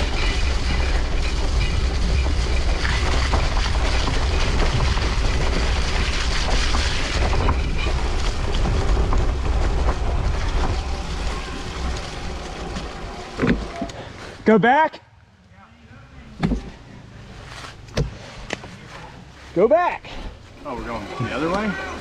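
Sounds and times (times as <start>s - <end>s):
wind rumbling on microphone: 0.0s - 14.0s
bike tyres rolling on road: 0.0s - 14.6s, 15.2s - 22.0s.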